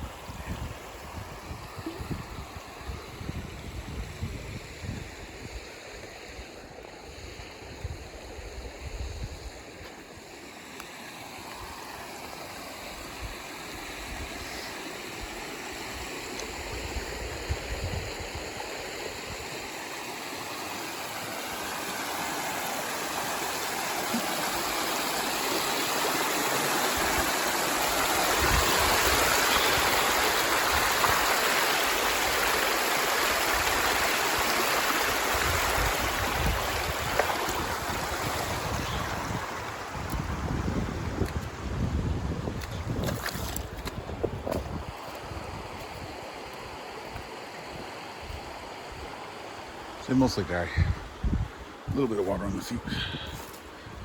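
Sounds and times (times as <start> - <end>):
creek water rushing: 0.0 - 54.0.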